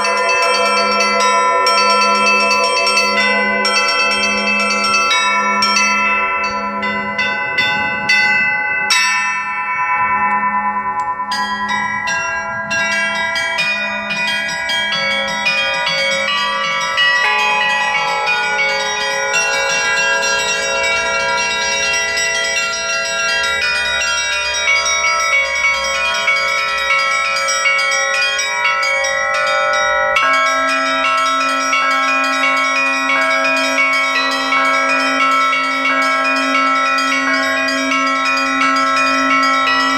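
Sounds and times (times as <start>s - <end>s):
low bell note: 0.0s - 22.7s
church bells ringing: 0.0s - 39.9s.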